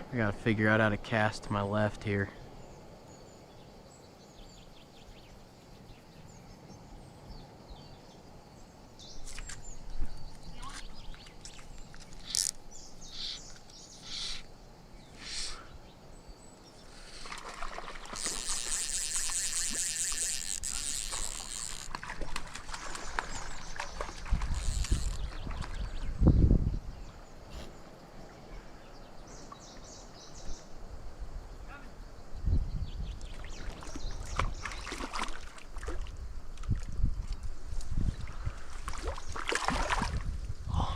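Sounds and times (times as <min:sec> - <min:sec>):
bird rattling buzz: 0:10.4 - 0:14.5, 0:16.8 - 0:25.6
birds short sharp calls: 0:10.4 - 0:15.8.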